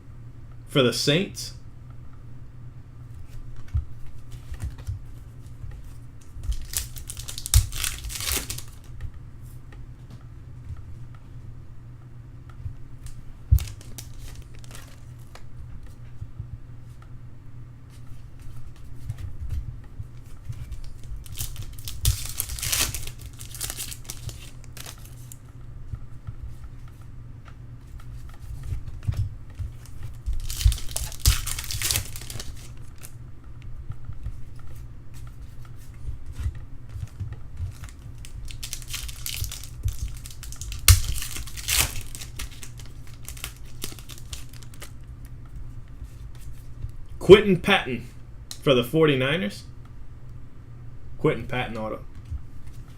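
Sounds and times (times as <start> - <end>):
steady low hum: 0.0 - 52.9
cards being handled: 3.2 - 9.0, 13.0 - 16.3, 20.2 - 25.5, 26.4 - 33.2, 34.3 - 46.8
foil wrappers crinkling and tearing: 6.2 - 8.9, 13.0 - 15.4, 20.5 - 25.4, 28.6 - 33.2, 37.0 - 45.0.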